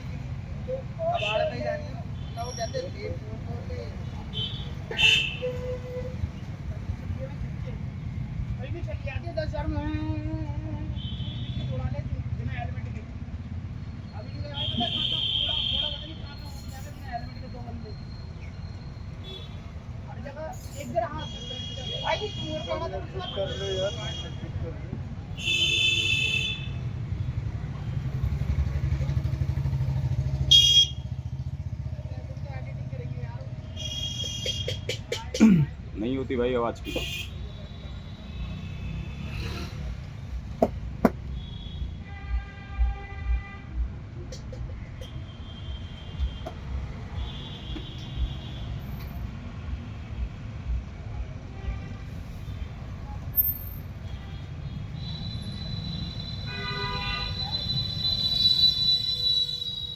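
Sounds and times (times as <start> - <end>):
traffic engine rumble: 0.0 - 59.9
dull thumps: 40.6 - 41.2
high horn blast: 56.5 - 57.4.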